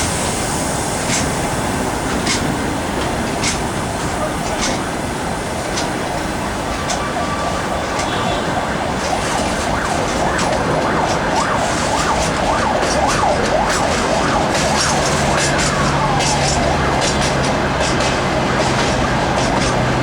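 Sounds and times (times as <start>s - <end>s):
freight train wheels rolling: 0.0s - 20.0s
siren wailing: 4.2s - 20.0s.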